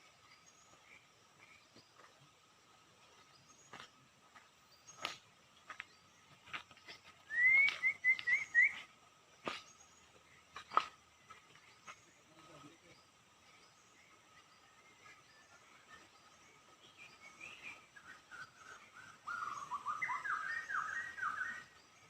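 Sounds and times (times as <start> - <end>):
bird whistling rising notes: 7.3 - 8.9, 17.2 - 21.8.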